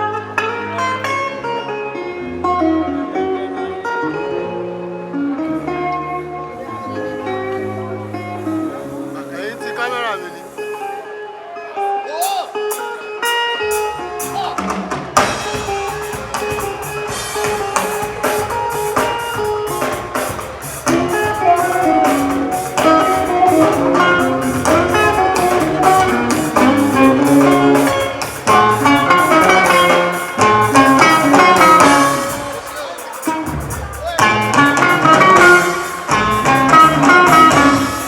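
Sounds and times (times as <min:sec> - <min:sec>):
guitars: 0:00.0 - 0:38.0
drum kit steady beat: 0:12.1 - 0:38.0.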